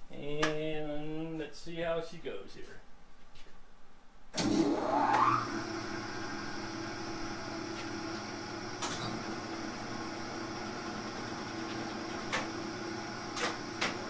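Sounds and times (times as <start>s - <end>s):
lathe whine and running hum: 4.4s - 14.0s.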